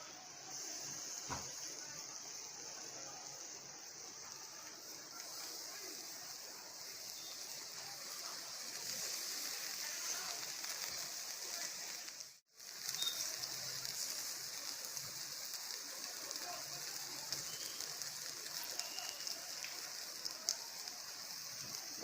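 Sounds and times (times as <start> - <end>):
chicken sizzling on grill: 0.0 - 22.0.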